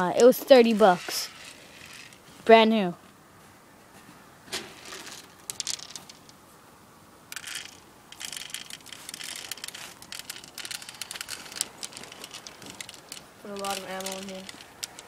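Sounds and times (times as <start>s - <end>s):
plastic pellets rattling into magazine: 0.9s - 2.2s, 4.8s - 6.4s, 7.3s - 15.0s.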